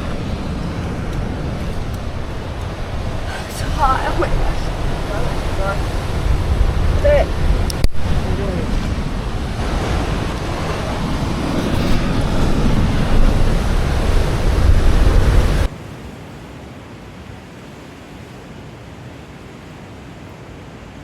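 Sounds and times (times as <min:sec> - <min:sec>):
sea surf rushing: 0:00.0 - 0:21.0
wind rumbling on microphone: 0:00.0 - 0:21.0.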